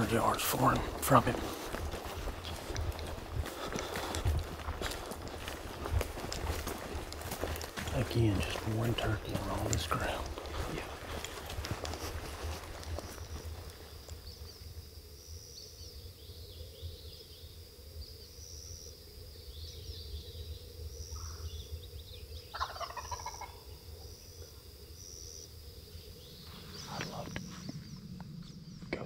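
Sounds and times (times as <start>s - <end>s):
distant turkey gobbling: 22.5s - 24.3s.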